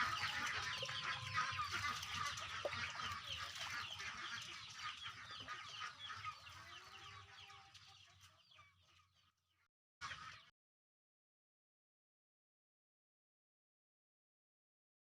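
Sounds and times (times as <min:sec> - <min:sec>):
chickens clucking: 0:00.0 - 0:09.3.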